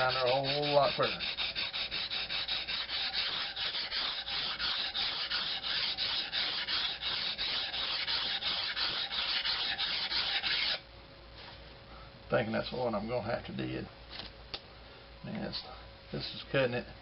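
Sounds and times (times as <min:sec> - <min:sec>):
knife scraping on whetstone: 0:00.0 - 0:10.8.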